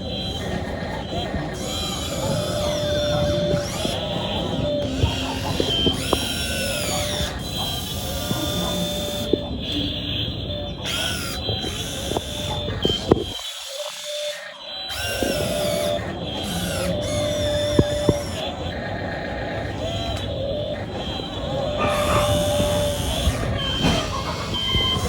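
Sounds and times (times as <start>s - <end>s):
hydraulic pump whining: 0.0s - 25.0s
scattered clicks: 0.0s - 25.0s.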